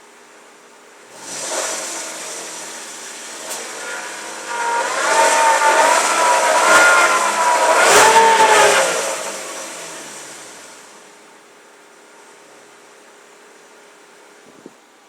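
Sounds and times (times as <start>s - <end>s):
car engine revving: 1.0s - 11.4s.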